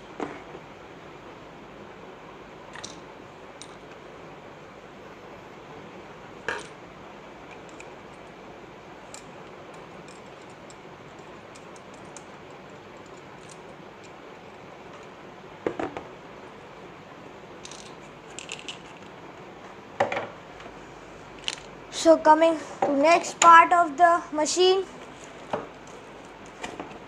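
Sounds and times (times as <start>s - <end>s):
steady background hiss: 0.0s - 27.0s
small hard parts clicking: 9.1s - 14.2s, 17.6s - 19.1s.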